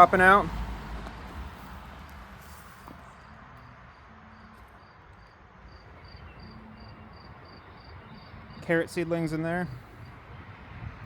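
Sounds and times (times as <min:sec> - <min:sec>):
cricket chirping: 0:02.4 - 0:08.6.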